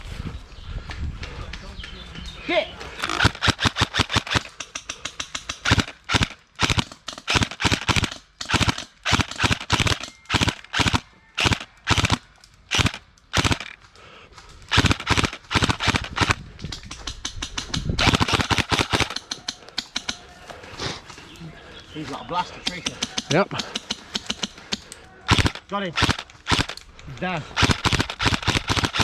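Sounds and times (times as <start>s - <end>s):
airsoft rifles firing bursts: 2.8s - 13.8s, 14.6s - 20.3s, 22.6s - 29.0s.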